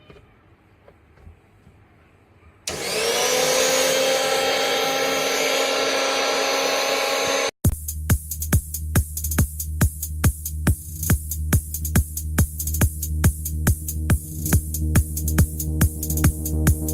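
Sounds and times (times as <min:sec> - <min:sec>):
mixer grinder motor whine: 0:02.7 - 0:07.6.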